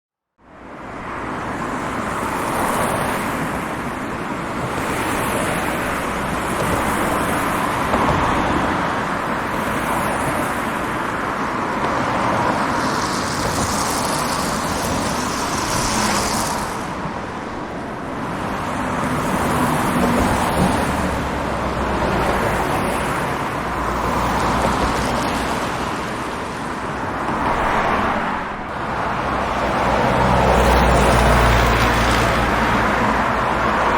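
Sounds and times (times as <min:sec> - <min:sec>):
road traffic: 0:00.4 - 0:33.9
vehicle passing with hiss: 0:09.5 - 0:33.2.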